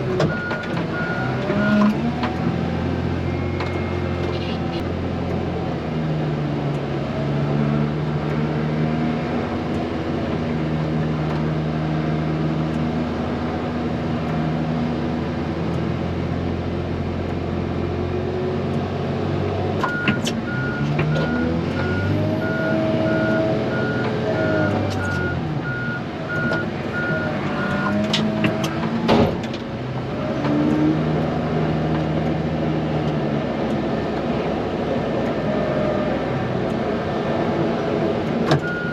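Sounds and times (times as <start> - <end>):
reverse alarm beeping: 38.6 - 38.9.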